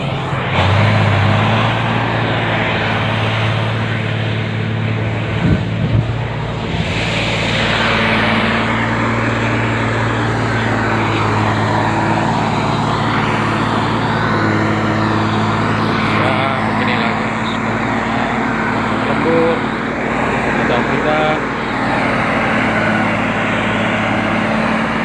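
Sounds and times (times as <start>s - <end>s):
diesel engine droning: 0.0s - 25.0s.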